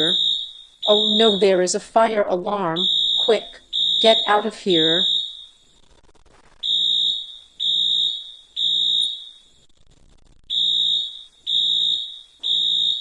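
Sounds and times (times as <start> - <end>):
fire alarm beeping: 0.0 - 1.8, 2.7 - 5.7, 6.6 - 9.6, 10.5 - 13.0.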